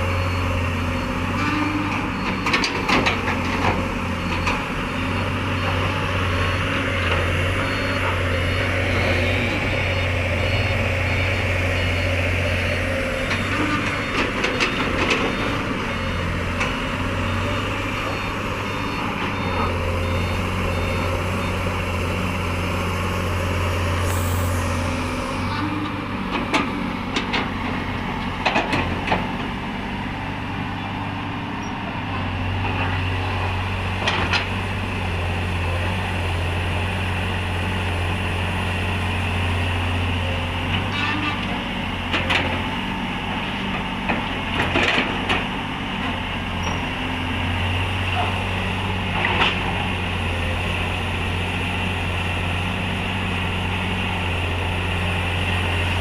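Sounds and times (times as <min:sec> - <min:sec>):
reversing beeper: 0:00.0 - 0:02.6, 0:04.2 - 0:22.4, 0:23.8 - 0:26.0
heavy diesel engines running: 0:00.0 - 0:56.0
short hiss: 0:24.0 - 0:25.2.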